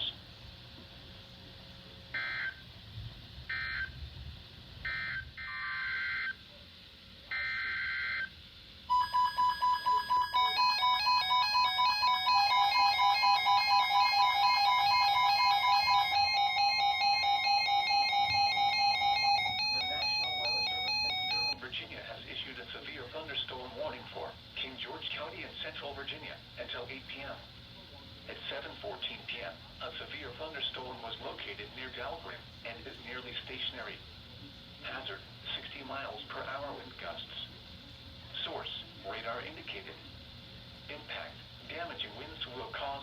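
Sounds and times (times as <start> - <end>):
buzzy digital data tones: 7.3 - 21.6
electronic alert tones: 8.9 - 21.6.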